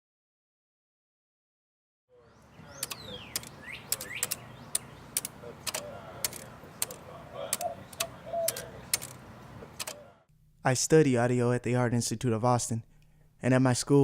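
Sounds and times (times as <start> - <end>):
sharp clicks: 2.7 - 10.0.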